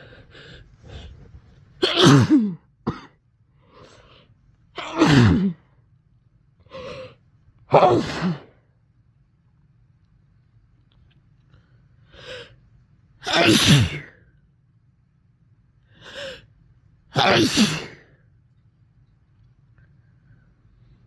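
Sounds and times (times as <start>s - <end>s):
person sneezing: 1.8s - 3.1s, 4.8s - 5.7s, 7.7s - 8.6s, 13.2s - 14.2s, 17.2s - 18.1s.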